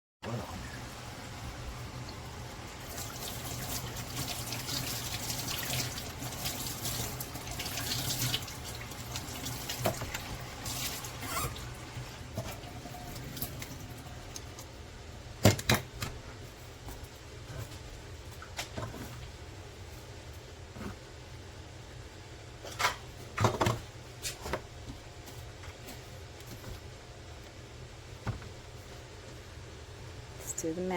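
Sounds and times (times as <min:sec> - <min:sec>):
water running from a tap: 0:00.8 - 0:14.6.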